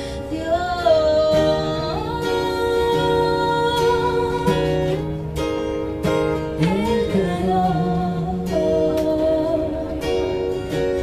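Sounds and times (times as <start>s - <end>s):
acoustic guitar strums: 0.0s - 11.0s
person singing: 6.6s - 10.3s.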